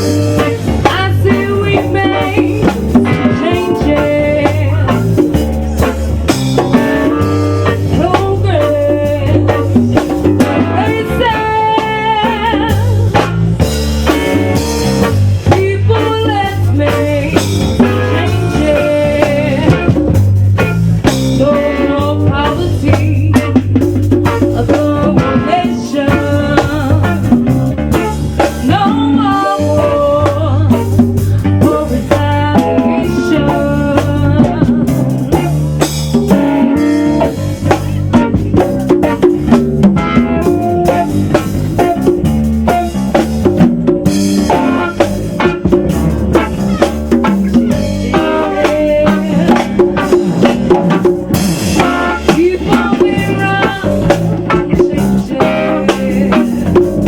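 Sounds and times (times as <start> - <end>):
person singing: 0.0 - 6.0, 7.6 - 13.3, 15.4 - 20.1, 21.3 - 27.4, 28.6 - 35.8, 46.3 - 50.5, 51.8 - 57.0
drum kit beat: 0.0 - 57.0
electric guitar: 0.0 - 57.0.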